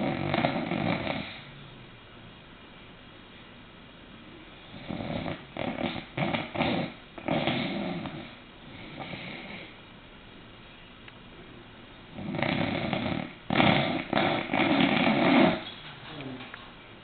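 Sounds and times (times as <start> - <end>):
dog snoring: 0.0 - 1.6, 4.6 - 9.8, 12.1 - 16.4.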